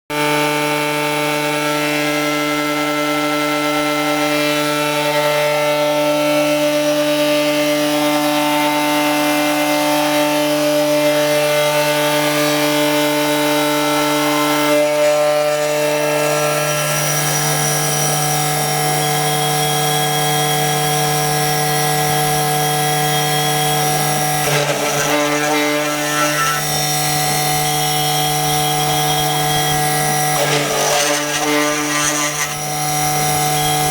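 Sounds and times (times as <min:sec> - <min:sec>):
milling machine spindle whine: 0:02.2 - 0:33.9
metal cutting noise: 0:09.4 - 0:33.9.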